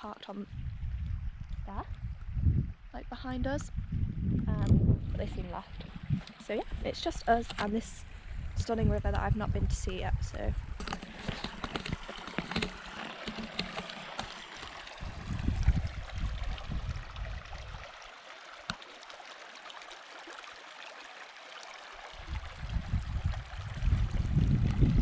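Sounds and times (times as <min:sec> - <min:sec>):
low rumble: 0:00.5 - 0:10.8
water rushing in stream: 0:05.0 - 0:08.7, 0:10.4 - 0:25.0.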